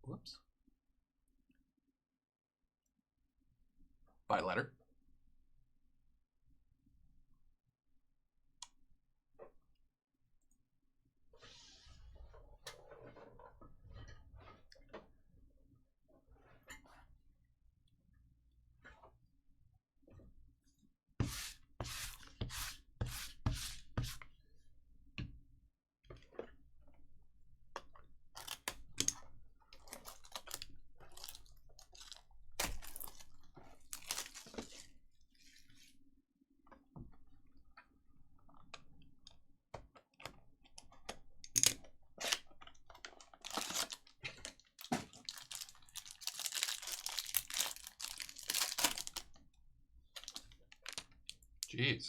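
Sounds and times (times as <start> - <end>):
wrapper crinkling: 29.8 - 35.0, 42.3 - 49.4, 50.2 - 51.4
card packs being torn open: 29.9 - 34.8, 43.2 - 49.3, 50.2 - 51.1.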